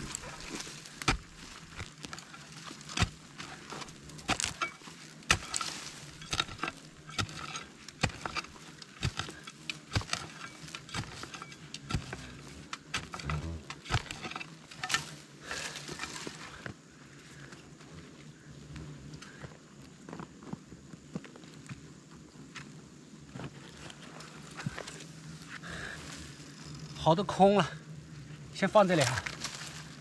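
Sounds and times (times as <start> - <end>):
tool digging into packed earth: 0.0 - 16.7, 28.7 - 30.0
hornets buzzing faintly: 0.0 - 20.1, 21.4 - 30.0.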